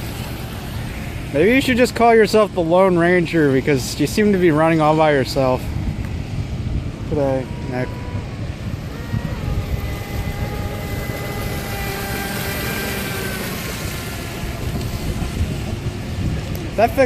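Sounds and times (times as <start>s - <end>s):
low wind rumble on microphone: 0.0s - 17.0s
electric motor high whine: 5.6s - 17.0s.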